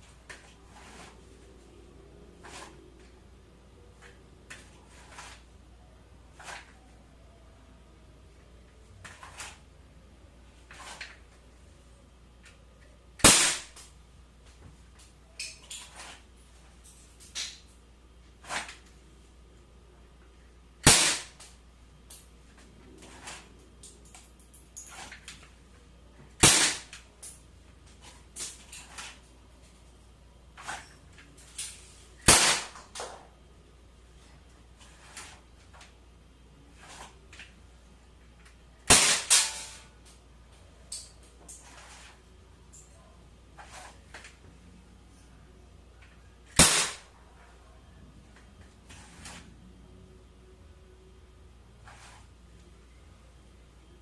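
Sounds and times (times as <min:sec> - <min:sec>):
bb pistol shot: 0:13.2 - 0:13.8, 0:20.8 - 0:21.4, 0:26.4 - 0:26.9, 0:32.2 - 0:33.0, 0:38.9 - 0:39.6, 0:46.6 - 0:47.0.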